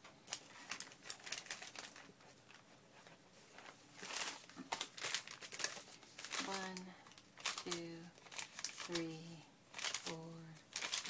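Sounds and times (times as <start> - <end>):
paper rustling and shuffling: 0.0 - 11.0.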